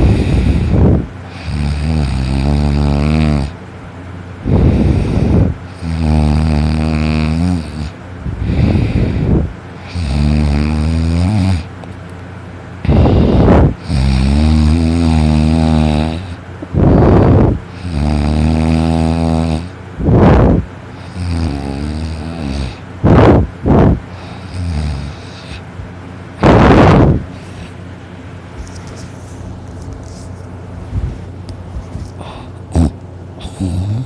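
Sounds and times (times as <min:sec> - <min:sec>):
person snoring loudly: 0:00.0 - 0:03.6, 0:04.5 - 0:11.7, 0:12.8 - 0:25.6, 0:32.2 - 0:34.0.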